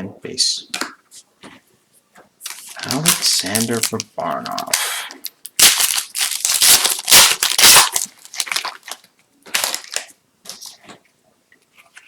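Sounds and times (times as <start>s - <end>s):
wrapper and cards rustling: 2.4s - 4.8s, 5.5s - 11.0s
plastic wrapper tearing: 2.4s - 10.8s.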